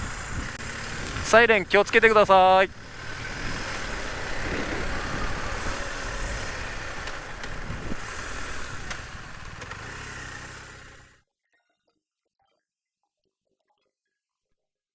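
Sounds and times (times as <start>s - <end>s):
motorcycle engine running: 0.0s - 11.2s
wind and road noise: 0.0s - 11.2s.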